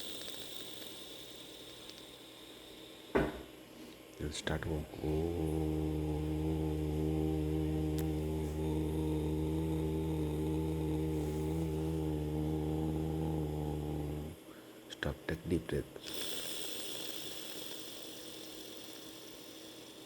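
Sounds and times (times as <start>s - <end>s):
person humming low note: 4.2s - 14.5s.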